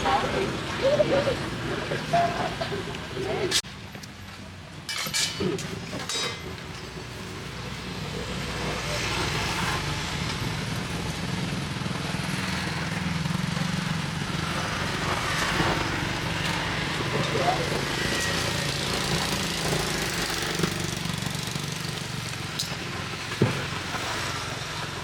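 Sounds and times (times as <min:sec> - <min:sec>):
vehicle engine running: 0:06.3 - 0:25.0.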